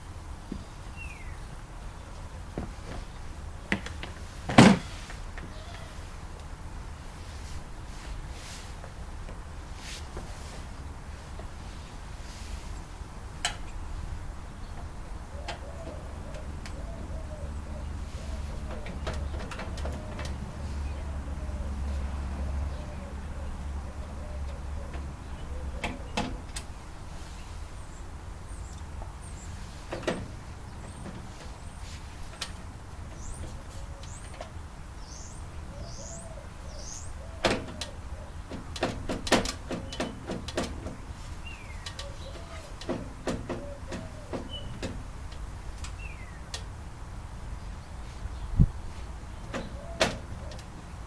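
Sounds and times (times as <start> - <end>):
sharp clicks and knocks: 3.7 - 5.6, 18.6 - 20.4, 29.9 - 31.6, 37.4 - 41.1, 41.8 - 46.7.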